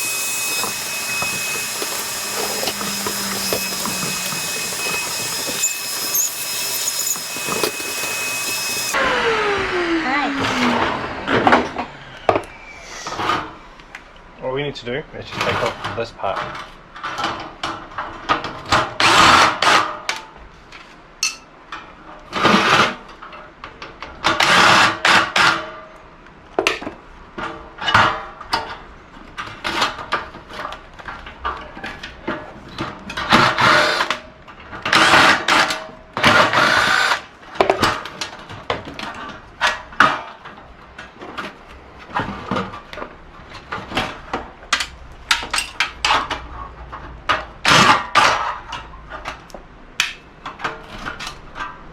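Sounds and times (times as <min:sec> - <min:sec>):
power drill bursts: 0:00.0 - 0:11.5, 0:33.4 - 0:34.2, 0:34.9 - 0:37.2.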